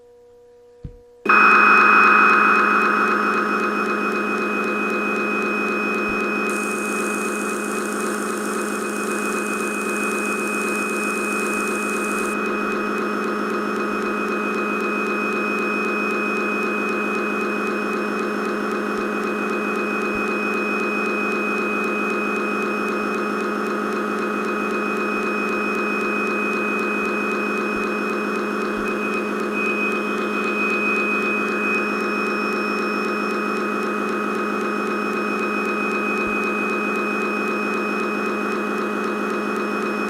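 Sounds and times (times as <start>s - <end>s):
machine hum: 1.3s - 12.4s.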